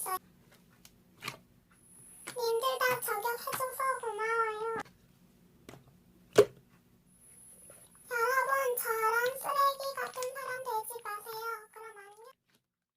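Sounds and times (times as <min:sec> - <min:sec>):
child-like voice chanting: 0:00.0 - 0:00.2, 0:02.3 - 0:04.8, 0:08.1 - 0:12.4.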